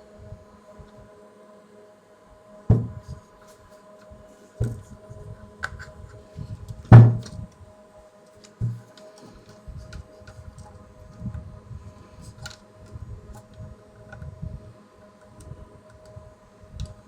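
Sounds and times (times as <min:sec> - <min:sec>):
dull knocks of hard parts: 0:02.7 - 0:03.0, 0:06.9 - 0:07.4, 0:08.6 - 0:08.8.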